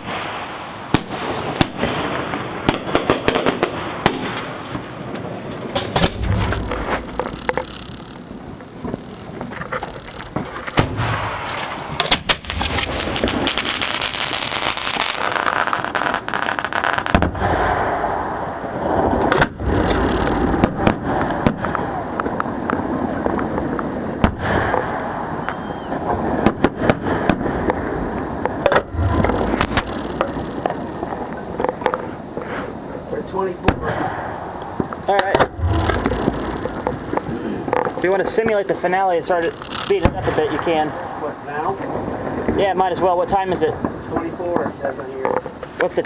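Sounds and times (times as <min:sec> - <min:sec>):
firework bangs and crackle: 0:00.0 - 0:46.0
deep firework thumps: 0:05.7 - 0:08.1, 0:08.8 - 0:13.8, 0:17.1 - 0:17.8, 0:19.2 - 0:21.8, 0:24.2 - 0:24.9, 0:28.6 - 0:30.8, 0:34.8 - 0:38.0.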